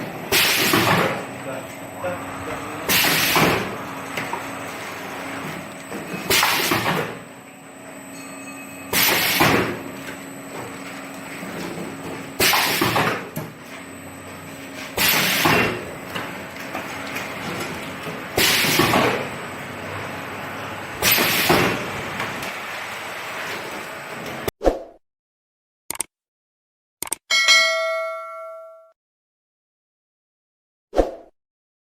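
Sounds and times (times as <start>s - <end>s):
steady machine hum: 0.0s - 24.5s
hissing burst from sealing machine: 0.3s - 1.2s, 2.9s - 3.8s, 6.3s - 7.0s, 8.9s - 9.8s, 12.4s - 13.2s, 15.0s - 15.8s, 18.4s - 19.2s, 21.0s - 21.9s.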